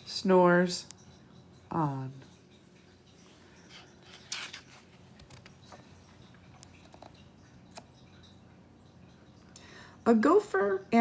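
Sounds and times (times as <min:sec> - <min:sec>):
paper page turning: 0:03.7 - 0:05.5.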